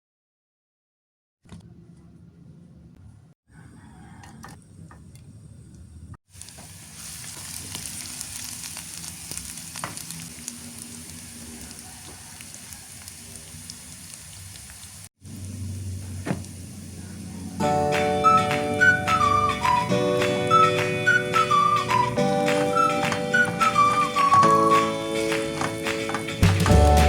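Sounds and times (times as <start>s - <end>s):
vegetables sizzling in a pan: 6.3s - 17.7s.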